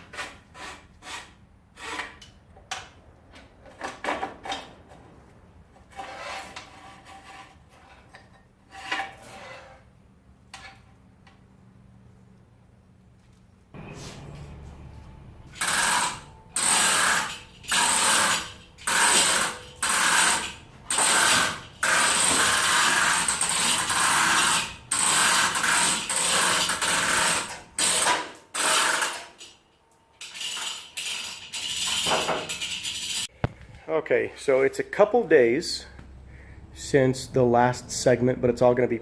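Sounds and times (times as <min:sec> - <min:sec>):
power tool ratcheting rattle: 0:15.5 - 0:29.6.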